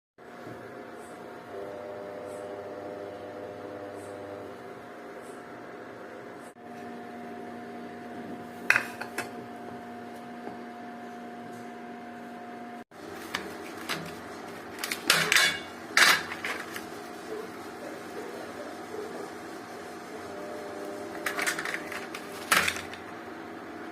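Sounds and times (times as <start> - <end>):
metal utensils scraping a pan: 14.8 - 16.8.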